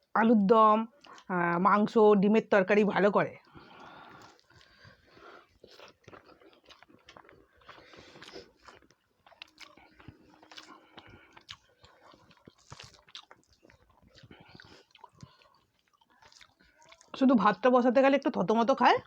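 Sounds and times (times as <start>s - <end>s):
chewing and mouth sounds: 1.0s - 1.3s, 3.4s - 17.2s.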